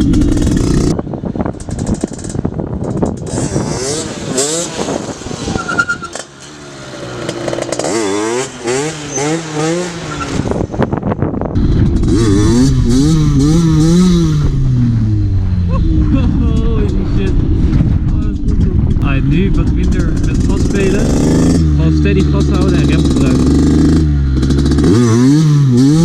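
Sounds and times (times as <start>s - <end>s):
two-stroke engine revving: 0.0s - 1.0s, 3.2s - 10.7s, 11.6s - 15.8s, 19.1s - 26.0s
low rumble: 10.4s - 25.0s.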